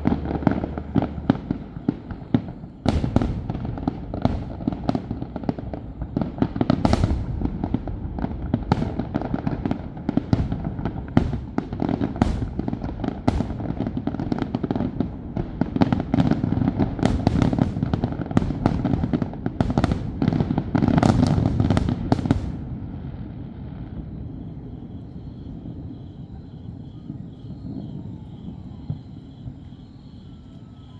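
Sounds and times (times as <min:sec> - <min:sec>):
low rumble: 0:00.0 - 0:14.0
fireworks bangs and crackling: 0:00.0 - 0:30.9.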